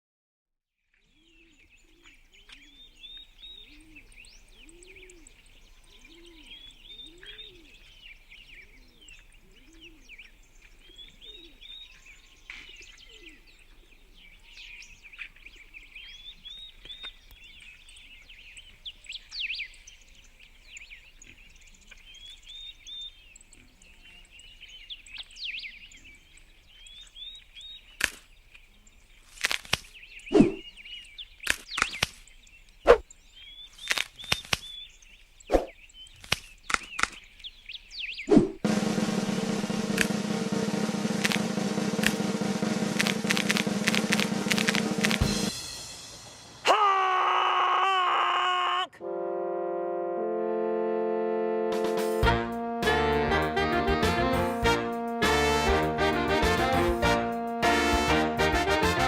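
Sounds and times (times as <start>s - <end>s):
birds chirping and singing: 1.0s - 38.7s
lower bird calls: 1.1s - 38.7s
sharp crack: 28.0s - 28.3s, 29.4s - 30.6s, 31.4s - 32.3s, 33.8s - 34.8s, 35.5s - 37.3s, 38.3s - 46.8s.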